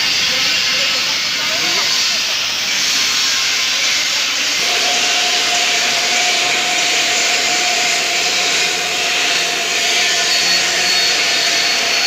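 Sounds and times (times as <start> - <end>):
welding arc hissing: 0.0 - 12.0.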